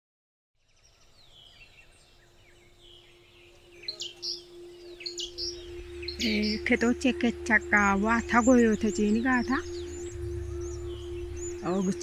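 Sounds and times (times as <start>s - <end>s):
birds chirping: 0.6s - 12.0s
faint outdoor ambience: 0.6s - 12.0s.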